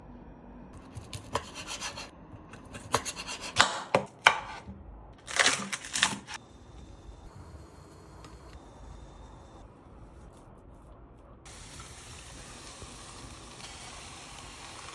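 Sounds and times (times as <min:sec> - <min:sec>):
knife cutting on a cutting board: 0:00.8 - 0:04.7.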